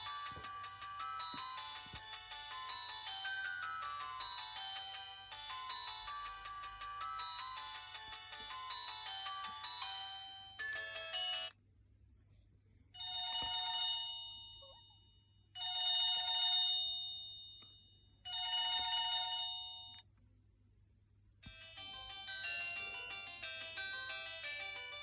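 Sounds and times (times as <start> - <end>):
busy melodic ringtone: 0.0 - 11.5, 21.5 - 25.0
phone ringtone rings: 0.0 - 11.5, 21.5 - 25.0.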